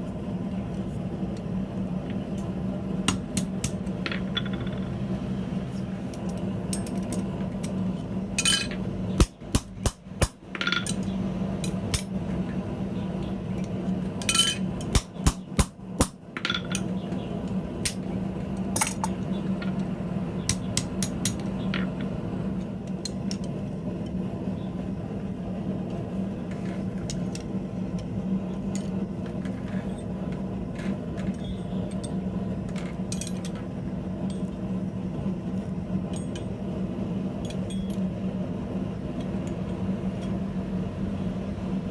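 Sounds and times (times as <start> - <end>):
steady low hum: 0.0 - 41.9
light metal clinks: 37.4 - 38.1.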